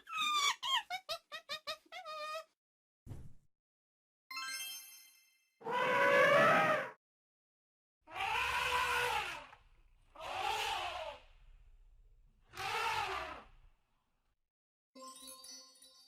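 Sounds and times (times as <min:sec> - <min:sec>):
animal calling: 0:05.6 - 0:06.9, 0:08.1 - 0:11.3, 0:12.5 - 0:13.6.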